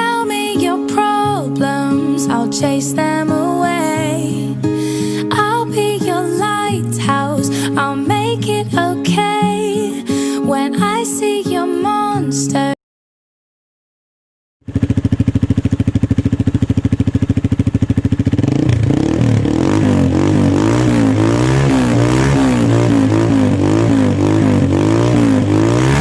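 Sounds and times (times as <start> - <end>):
motorcycle engine idling and revving: 14.6 - 26.0.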